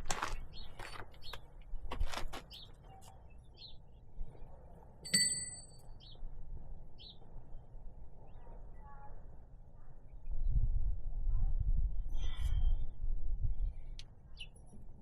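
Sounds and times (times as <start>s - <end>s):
bright metallic clink: 5.1s - 5.8s.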